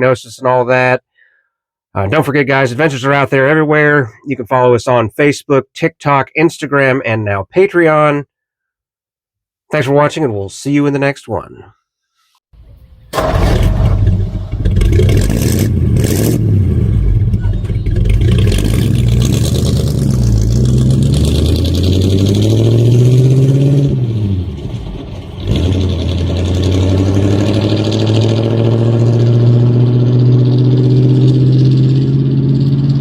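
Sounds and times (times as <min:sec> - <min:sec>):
vehicle engine accelerating: 0:12.8 - 0:33.0.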